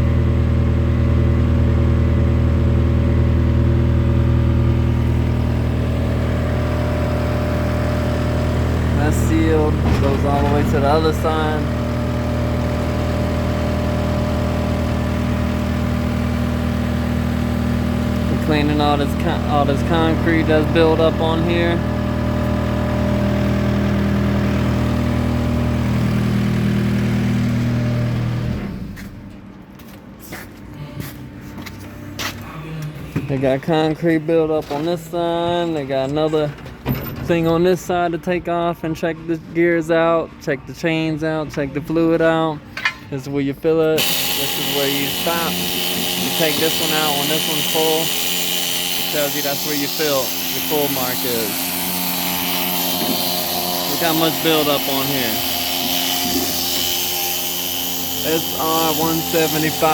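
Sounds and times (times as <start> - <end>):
diesel engine idling: 0.0 - 29.0.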